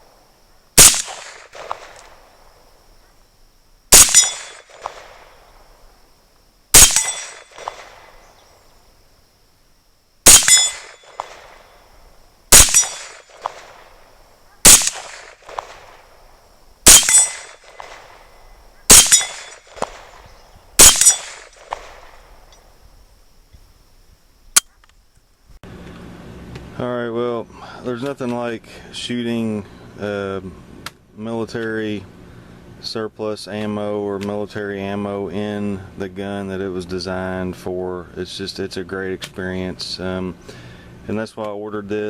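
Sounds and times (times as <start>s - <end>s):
rifle shots with echo: 0.8s - 2.6s, 3.9s - 5.6s, 6.8s - 8.3s, 10.3s - 11.8s, 12.5s - 16.2s, 16.8s - 22.3s.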